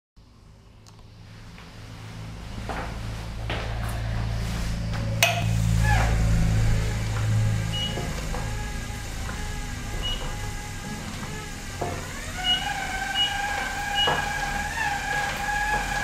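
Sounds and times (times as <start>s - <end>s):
stair climber motor hum: 1.3s - 16.0s
high squeaks: 5.7s - 16.0s.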